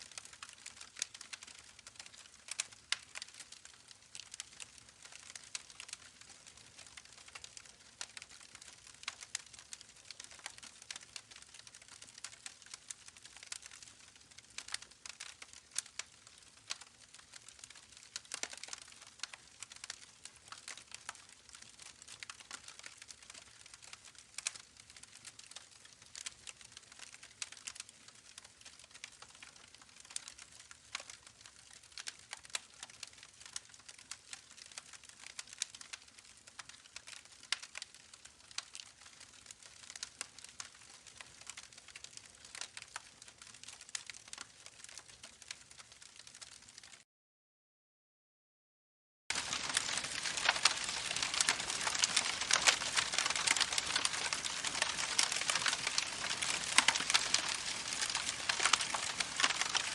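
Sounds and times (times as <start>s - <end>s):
campfire crackling: 0.1s - 47.0s, 49.3s - 59.9s.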